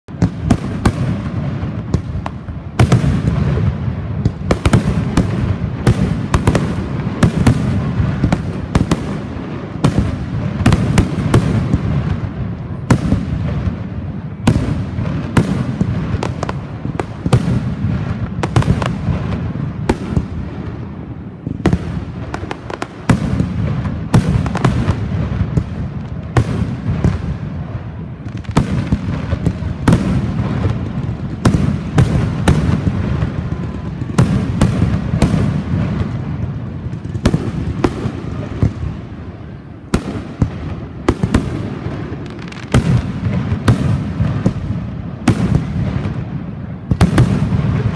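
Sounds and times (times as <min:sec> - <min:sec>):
firework bursts and bangs: 0:00.1 - 0:47.9.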